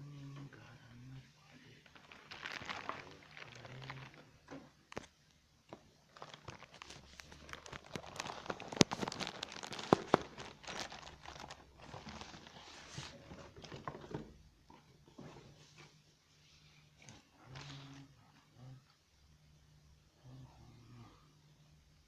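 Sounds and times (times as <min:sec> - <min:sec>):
packaging crinkling and rustling: 0:01.8 - 0:14.3.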